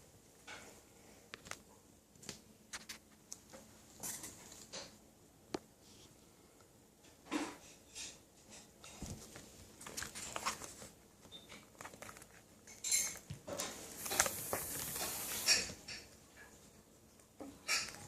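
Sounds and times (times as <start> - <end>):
crinkling rustle: 8.8 - 18.0.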